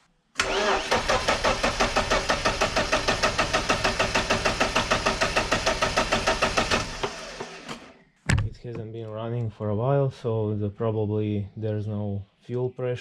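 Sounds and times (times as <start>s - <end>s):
starter motor cranking engine: 0.4s - 8.0s.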